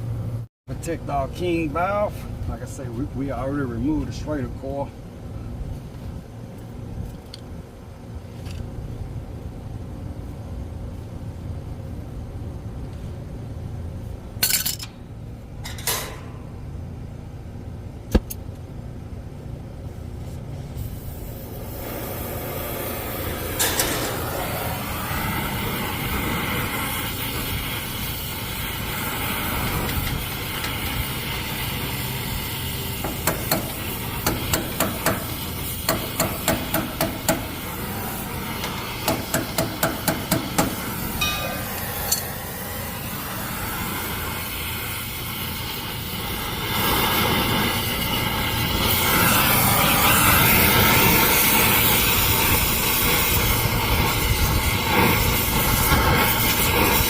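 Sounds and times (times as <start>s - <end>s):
steady background noise: 0.0s - 57.0s
loud steady hiss: 20.7s - 57.0s.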